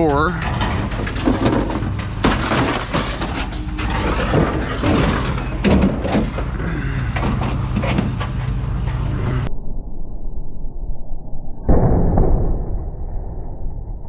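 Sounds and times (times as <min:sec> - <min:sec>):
metal car parts clanking on scrap pile: 0:00.0 - 0:09.2
steady low hum: 0:00.0 - 0:11.1.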